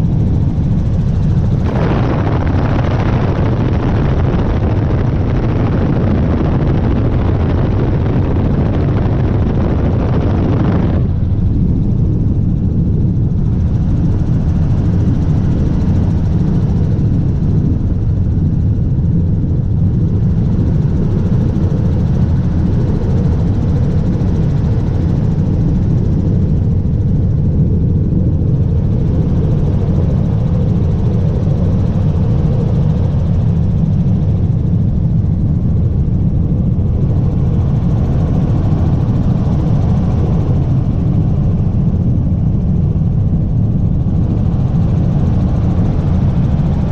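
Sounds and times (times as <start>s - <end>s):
helicopter turbine and rotor: 0.0s - 46.9s.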